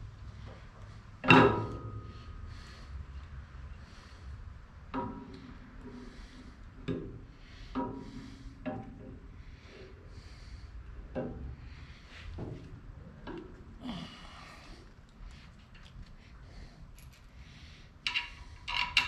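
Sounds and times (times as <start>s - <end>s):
metal parts knocking and clinking: 18.0s - 19.0s.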